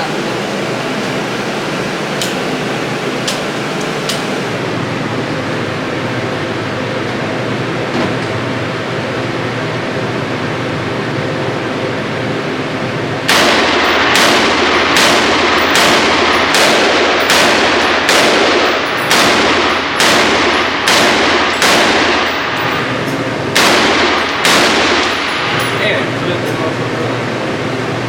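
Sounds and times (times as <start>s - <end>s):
gunshots with ringing echo: 13.3s - 26.2s.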